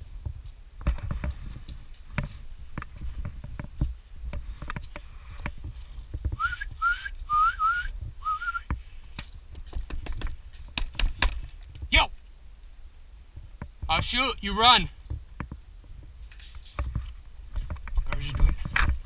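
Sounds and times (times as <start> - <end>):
short rising whistled notes: 6.4 - 8.7.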